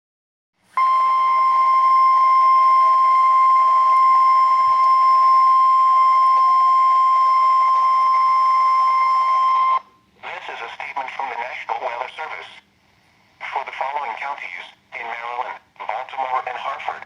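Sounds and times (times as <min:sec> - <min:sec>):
steady high warning tone: 0:00.8 - 0:10.1.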